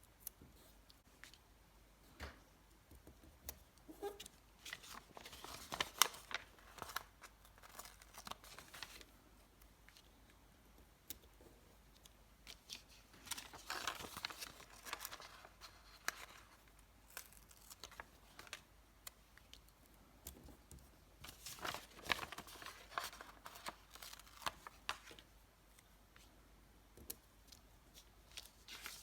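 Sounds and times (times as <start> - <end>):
stickers peeling and rustling: 11.9 - 19.8.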